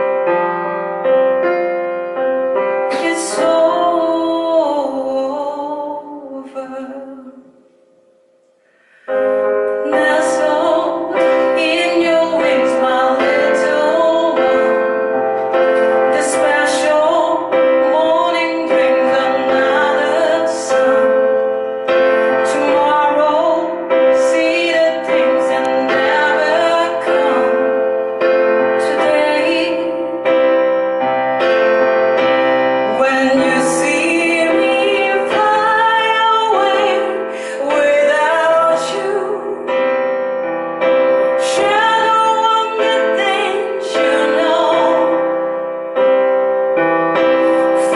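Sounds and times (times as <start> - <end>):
keyboard accompaniment: 0.0 - 47.9
woman singing: 2.8 - 7.6, 9.1 - 30.5, 32.8 - 40.0, 41.1 - 45.6, 47.6 - 47.9.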